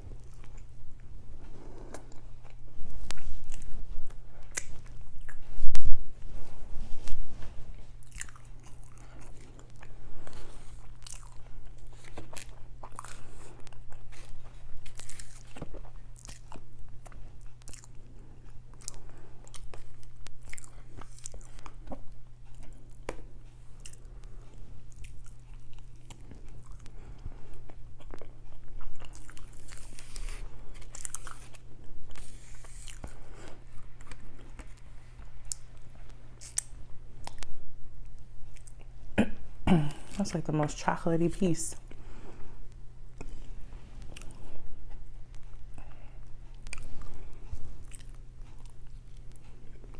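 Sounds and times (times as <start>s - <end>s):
steady low hum: 0.0s - 49.9s
crunching and wet chewing: 0.1s - 5.8s, 6.4s - 39.2s, 41.8s - 49.9s.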